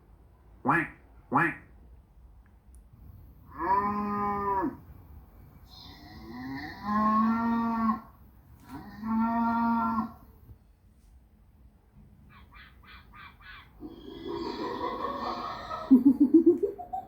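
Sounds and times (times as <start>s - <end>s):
cattle mooing: 3.5s - 4.8s, 6.1s - 8.1s, 8.7s - 10.2s.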